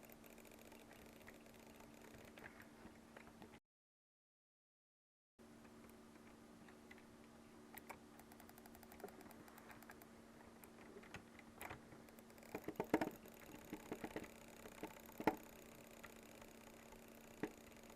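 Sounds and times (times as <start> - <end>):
steady low hum: 5.4 - 17.9
small sharp clicks: 5.6 - 17.9.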